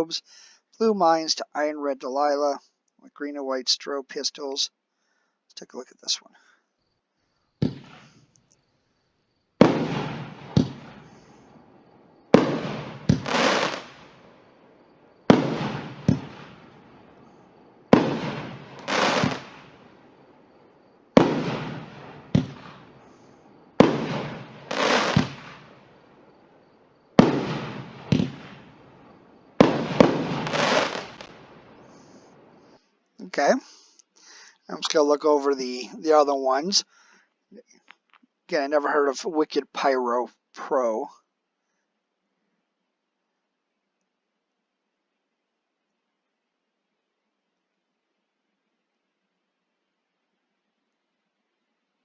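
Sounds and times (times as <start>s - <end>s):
firework crackling: 7.6s - 8.2s, 9.6s - 11.6s, 12.3s - 20.3s, 21.1s - 26.0s, 27.2s - 32.5s
firework launch thump: 7.6s - 8.2s, 9.6s - 11.0s, 15.3s - 16.6s, 18.0s - 19.7s, 21.2s - 22.8s, 23.8s - 25.6s, 27.2s - 28.7s, 29.6s - 31.3s
firework shell breaking: 18.0s - 19.7s, 23.8s - 25.6s.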